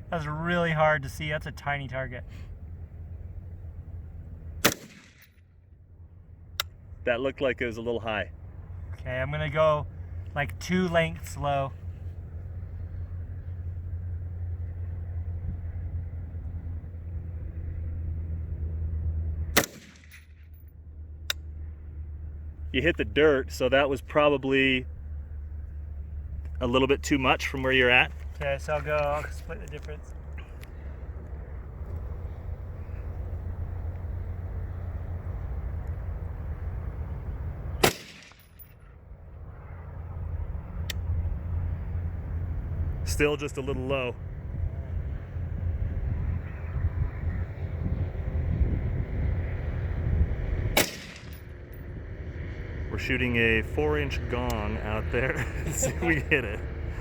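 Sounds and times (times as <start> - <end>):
steady low rumble: 0.0 - 57.0
rifle shot: 4.6 - 5.4, 19.6 - 20.4, 37.8 - 38.6, 50.7 - 51.5.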